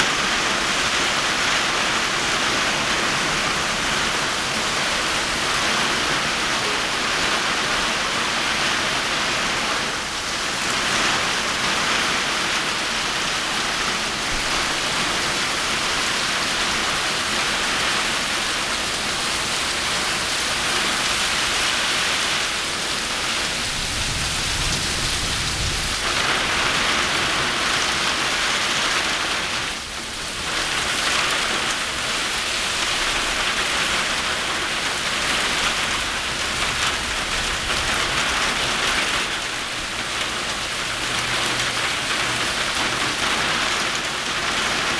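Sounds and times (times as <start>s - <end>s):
rain falling: 0.0s - 44.9s.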